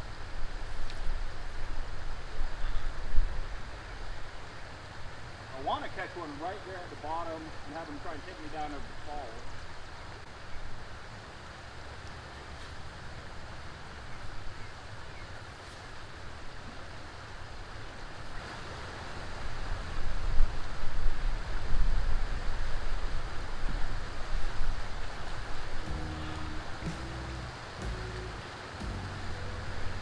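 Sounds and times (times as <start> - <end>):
uneven low rumble: 25.8 - 30.0.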